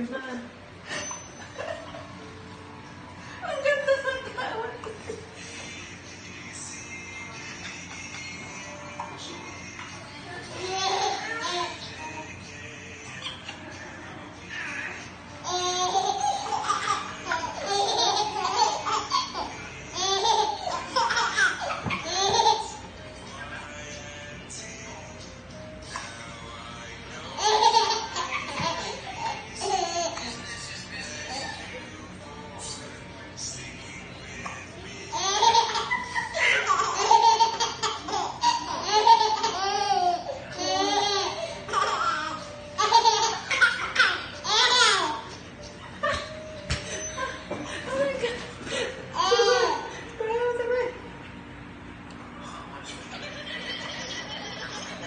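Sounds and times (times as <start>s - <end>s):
babies laughing and squealing: 10.6s - 11.9s, 15.5s - 22.8s, 27.4s - 30.4s, 35.1s - 45.3s, 48.2s - 50.0s.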